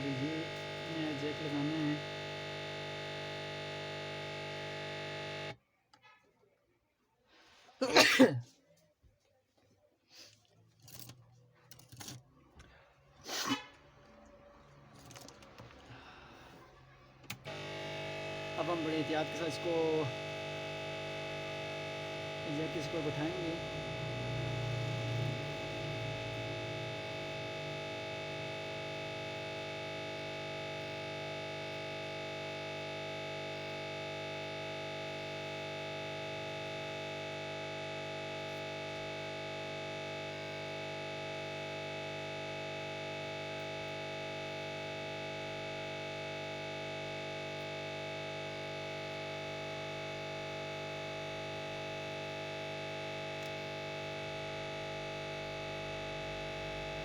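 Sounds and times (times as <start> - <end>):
steady droning buzz: 0.0 - 5.6, 17.3 - 57.0.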